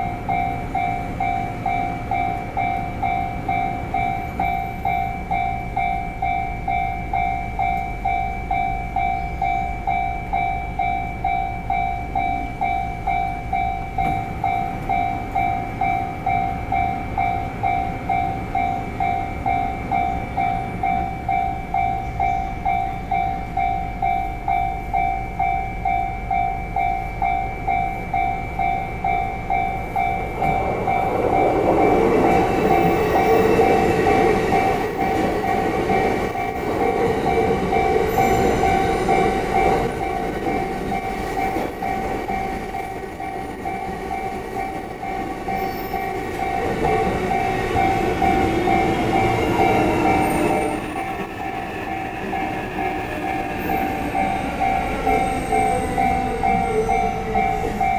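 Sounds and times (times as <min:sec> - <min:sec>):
level crossing warning bell: 0:00.0 - 0:57.9
train rumbling: 0:00.0 - 0:57.9.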